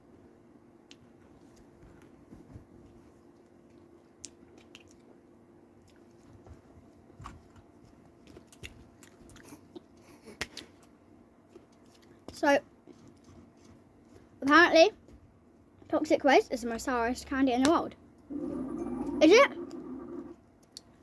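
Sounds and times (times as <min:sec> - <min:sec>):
faint low hum: 0:00.0 - 0:21.0
mouth clicks and crunches: 0:04.2 - 0:05.1, 0:08.2 - 0:13.6
chewing hard candy: 0:08.1 - 0:10.9.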